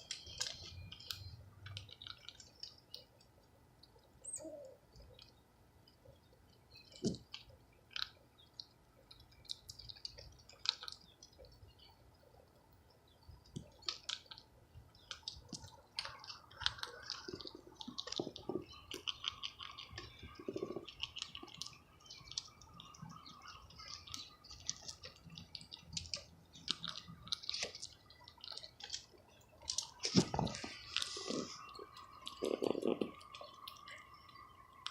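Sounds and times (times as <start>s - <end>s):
squirrel gnawing a nut: 0.0s - 34.9s.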